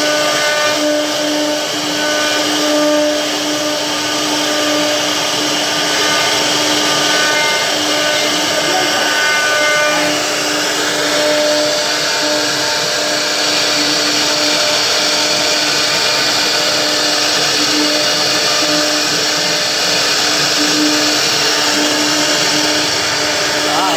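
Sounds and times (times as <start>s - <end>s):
cnc machine motor hissing: 0.0s - 23.9s
higher tones: 20.7s - 23.9s.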